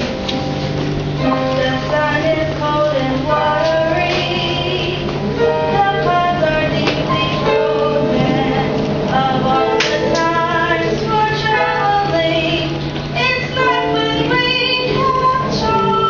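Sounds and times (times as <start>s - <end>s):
musical accompaniment: 0.0s - 16.0s
young woman singing: 1.2s - 16.0s.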